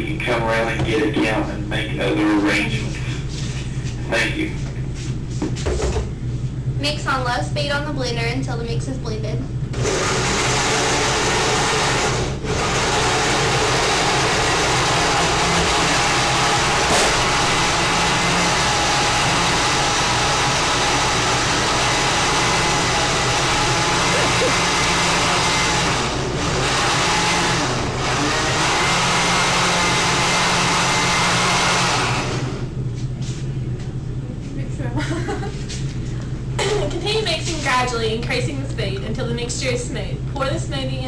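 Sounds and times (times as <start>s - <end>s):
countertop blender running: 9.7s - 32.8s.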